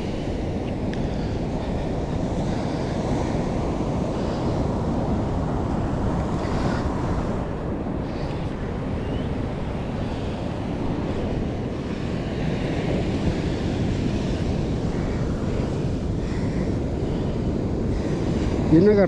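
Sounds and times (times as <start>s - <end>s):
ocean surf breaking: 0.0s - 19.0s
wind buffeting microphone: 0.0s - 19.0s.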